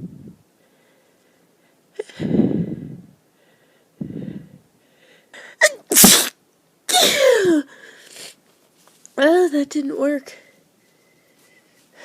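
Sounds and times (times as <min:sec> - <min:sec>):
loud sneeze: 0:05.6 - 0:07.4.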